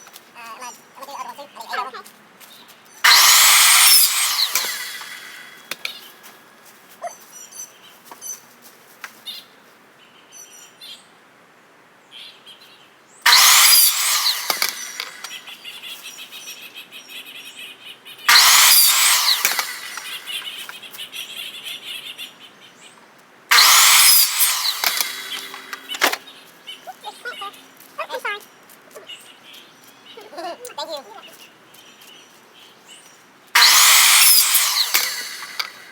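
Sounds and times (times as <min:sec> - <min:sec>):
power saw cutting: 0:03.0 - 0:06.0, 0:13.3 - 0:15.6, 0:18.3 - 0:20.6, 0:23.5 - 0:26.3, 0:33.6 - 0:35.9.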